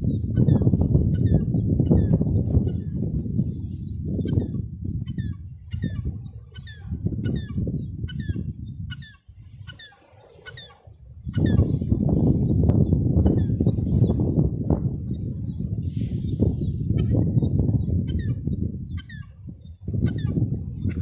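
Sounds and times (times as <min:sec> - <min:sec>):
gulls calling: 0:09.0 - 0:11.9.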